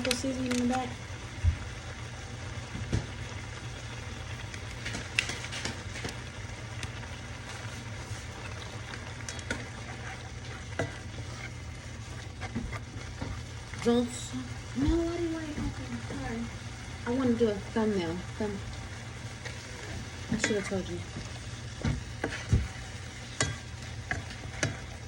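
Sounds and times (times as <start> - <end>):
utensil clicking against pan: 0.0 - 0.8, 8.8 - 9.7, 20.3 - 25.0
vegetables sizzling in a skillet: 0.0 - 25.0.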